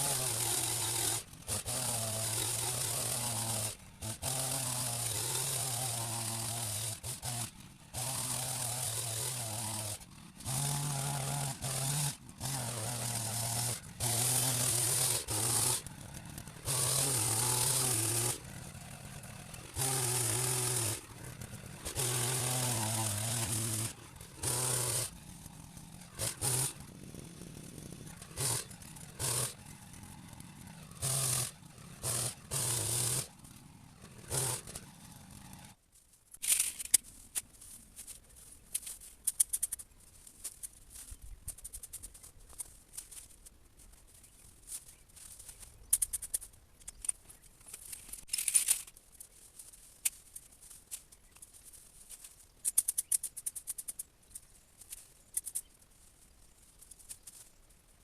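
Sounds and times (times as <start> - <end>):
hedge trimmer cutting: 0.0 - 35.8, 44.2 - 49.0
hedge clippings crackling and rustling: 11.5 - 58.0.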